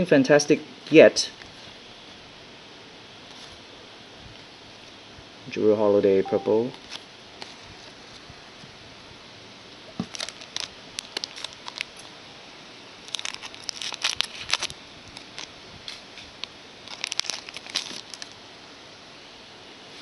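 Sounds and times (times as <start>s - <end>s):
card pack wrapper crinkling and tearing: 10.0s - 12.2s, 13.0s - 18.4s.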